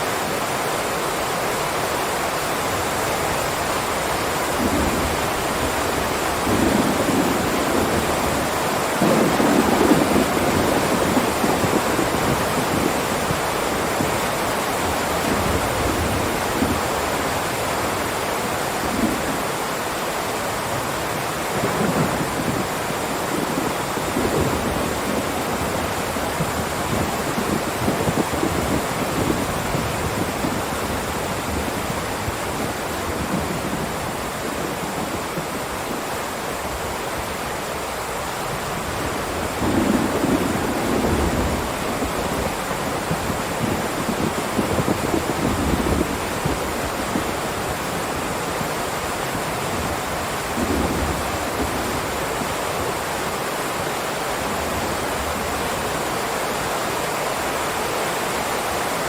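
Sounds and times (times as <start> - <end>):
heavy rain: 0.0 - 59.0.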